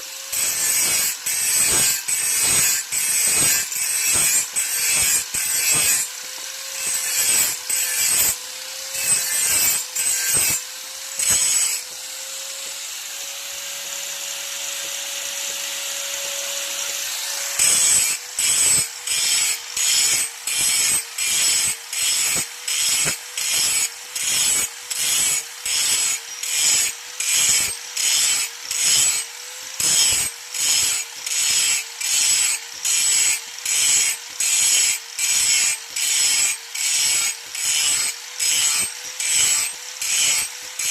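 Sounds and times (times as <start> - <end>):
blade rasping on grinding wheel: 0.0 - 40.9
grinder hum: 0.0 - 40.9.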